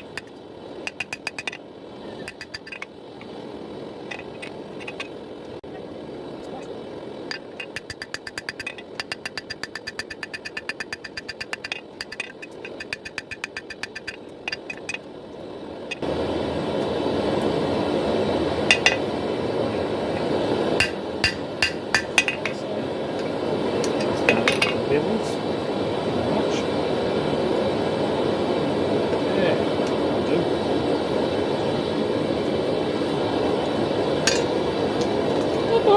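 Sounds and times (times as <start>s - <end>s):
steady rushing noise: 0.0s - 35.9s
hammer striking steel on anvil: 18.7s - 19.0s, 20.8s - 22.5s.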